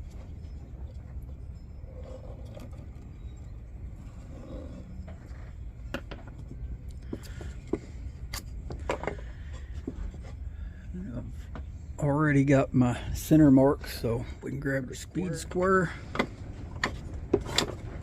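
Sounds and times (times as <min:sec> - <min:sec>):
steady low hum: 0:00.0 - 0:18.0
wooden objects clicking and tapping: 0:05.9 - 0:10.3.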